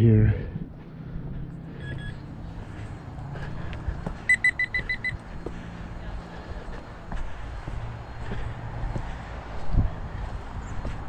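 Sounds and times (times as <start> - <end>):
metal detector beeping: 1.8 - 2.2, 4.3 - 5.2.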